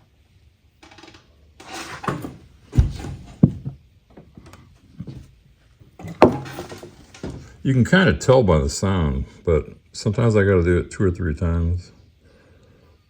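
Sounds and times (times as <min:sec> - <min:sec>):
gritty valve lapping scrapes: 0:01.6 - 0:02.9
sharp knocks: 0:02.0 - 0:03.7.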